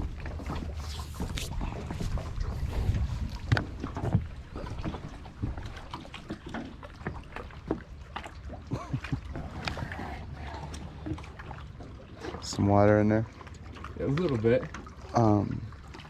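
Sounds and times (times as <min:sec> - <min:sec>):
wind rumbling on microphone: 0:00.0 - 0:05.9
water splashing: 0:00.0 - 0:16.0.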